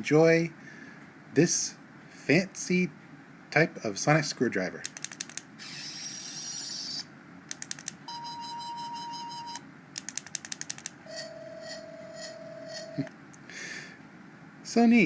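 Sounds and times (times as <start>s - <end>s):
toy button clicks: 4.8s - 6.8s, 7.5s - 8.0s, 10.0s - 11.3s
toy electronic sound effects: 5.6s - 7.1s, 8.1s - 9.6s, 10.5s - 13.1s.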